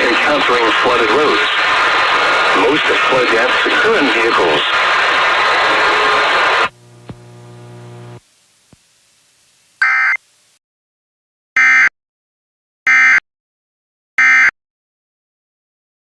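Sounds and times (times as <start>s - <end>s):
loud radio static: 0.0s - 8.2s
faint hum: 0.0s - 10.6s.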